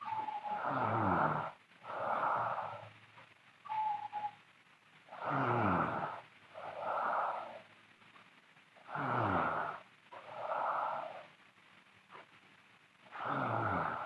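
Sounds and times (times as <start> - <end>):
breathy hiss: 0.0 - 14.0
girl snoring: 0.4 - 2.8, 5.1 - 7.6, 8.8 - 11.3, 13.1 - 14.0.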